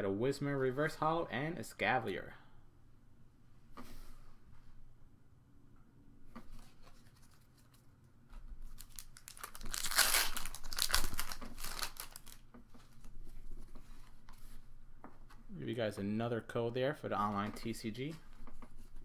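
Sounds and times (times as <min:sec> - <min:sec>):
foil wrapper crinkling and tearing: 0:08.6 - 0:13.1.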